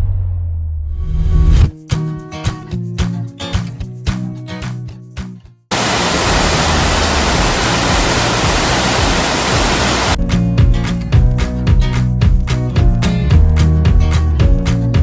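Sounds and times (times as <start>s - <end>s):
waterfall rushing: 5.7s - 10.2s
background music: 6.2s - 15.0s.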